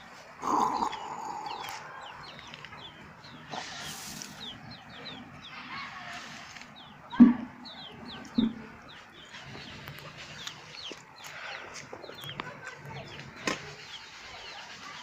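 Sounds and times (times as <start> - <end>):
chicks peeping: 0.0 - 15.0
louder low chicken calls: 0.4 - 2.2.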